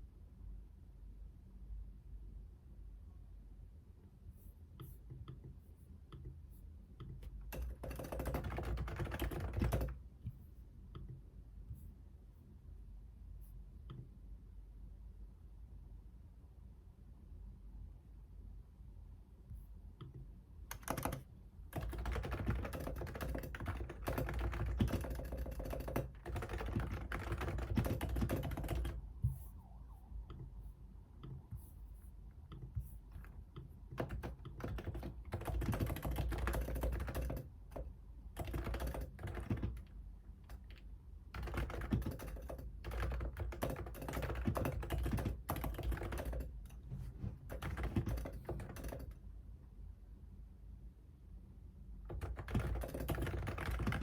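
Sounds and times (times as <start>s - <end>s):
fast typing on a keyboard: 7.1s - 10.0s, 20.7s - 29.1s, 32.5s - 39.9s, 40.5s - 46.8s, 47.5s - 49.2s, 52.0s - 54.0s.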